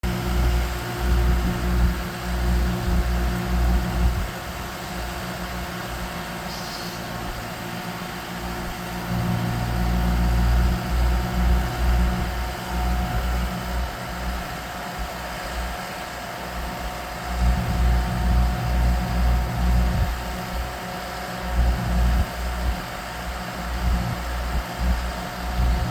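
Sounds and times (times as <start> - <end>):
engine idling: 0.0 - 25.9.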